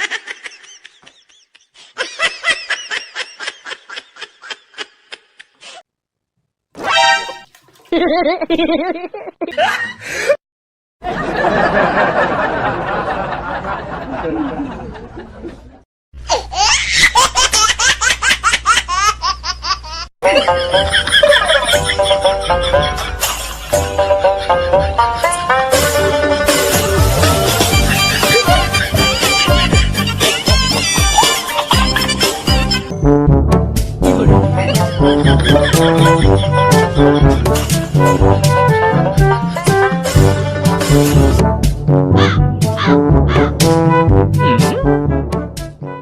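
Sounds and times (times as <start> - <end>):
music with steady notes: 21.9 - 46.0
high-pitched laughter: 27.4 - 32.8, 34.1 - 37.4.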